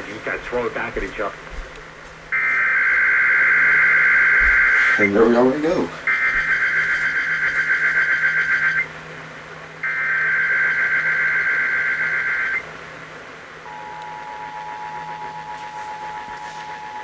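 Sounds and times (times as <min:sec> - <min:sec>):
faint low hum: 0:00.0 - 0:17.0
digital data bursts: 0:02.3 - 0:08.9, 0:09.8 - 0:12.6
two-tone attention signal: 0:02.4 - 0:08.9, 0:09.8 - 0:12.6, 0:13.7 - 0:17.0.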